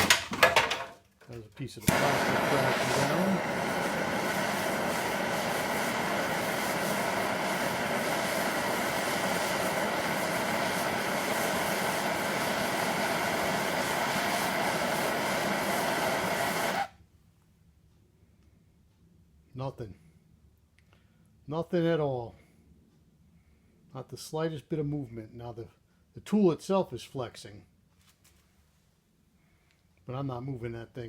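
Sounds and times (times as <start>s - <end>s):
propane torch flame hissing: 1.8s - 17.0s.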